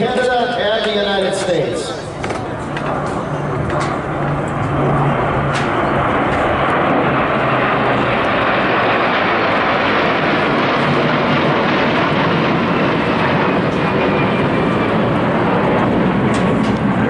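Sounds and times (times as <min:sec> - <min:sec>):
jet fighters roaring overhead: 0:00.0 - 0:17.0.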